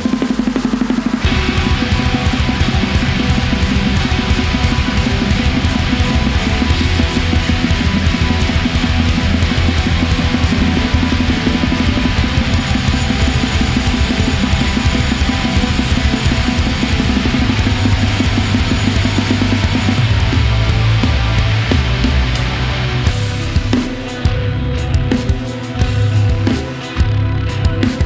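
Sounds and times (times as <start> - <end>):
drum kit played hard: 0.0 - 28.0
electric guitars: 0.0 - 28.0
live heavy rock band: 0.0 - 28.0.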